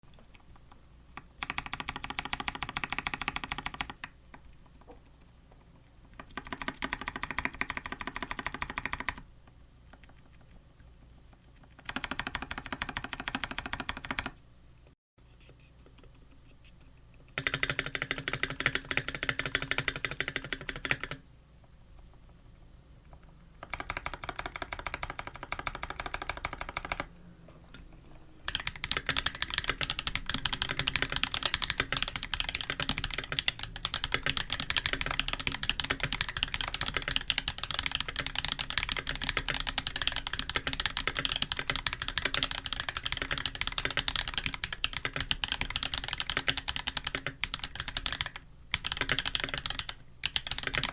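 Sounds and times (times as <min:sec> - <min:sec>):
typing on mechanical keyboard: 0:00.3 - 0:04.4, 0:06.2 - 0:09.2, 0:11.6 - 0:14.4, 0:17.3 - 0:21.2, 0:23.6 - 0:27.1, 0:28.4 - 0:50.9.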